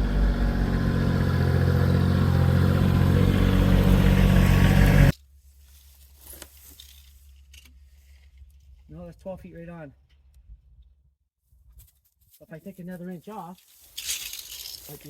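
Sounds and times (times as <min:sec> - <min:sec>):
engine running steadily: 0:00.0 - 0:05.1.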